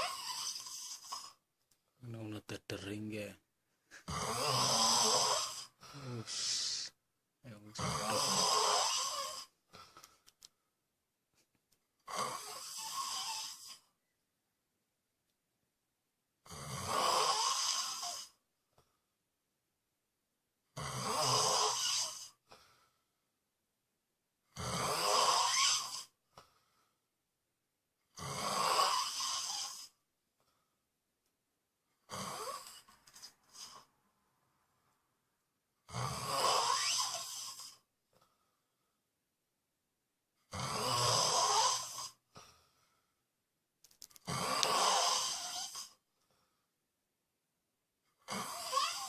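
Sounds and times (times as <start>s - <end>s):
person snoring: 0.0s - 1.4s, 3.9s - 9.6s, 12.1s - 13.9s, 16.4s - 18.4s, 20.8s - 22.4s, 24.5s - 26.2s, 28.1s - 30.0s, 32.0s - 33.9s, 35.9s - 37.8s, 40.5s - 42.2s, 44.2s - 46.0s, 48.2s - 49.0s.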